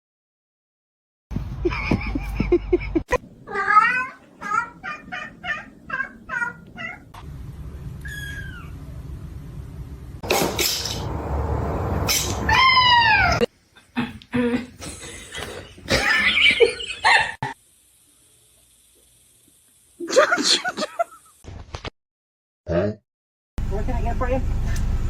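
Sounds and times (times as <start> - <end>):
cat meowing: 3.5 - 7.1, 8.0 - 8.8.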